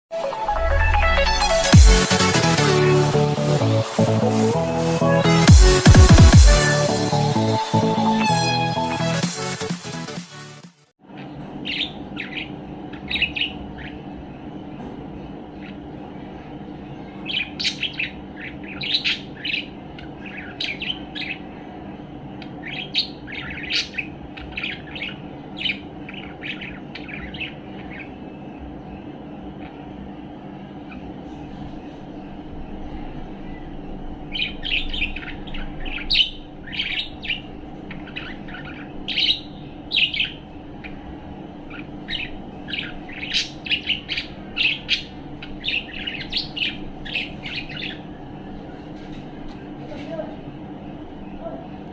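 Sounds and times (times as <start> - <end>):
low hum: 11.0 - 51.9
budgerigar chirping: 34.3 - 40.9, 41.7 - 48.0.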